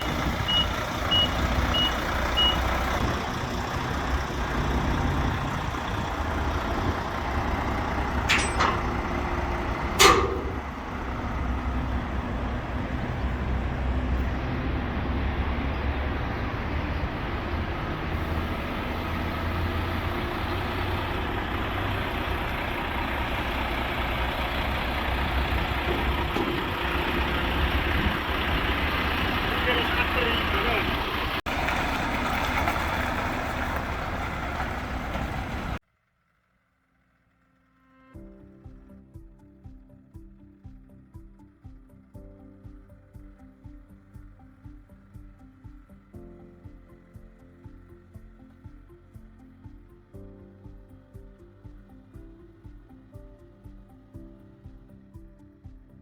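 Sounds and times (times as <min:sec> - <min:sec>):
reversing alarm beeps: 0:00.0 - 0:02.7
diesel tractor engine running: 0:00.0 - 0:37.4, 0:38.6 - 0:56.0.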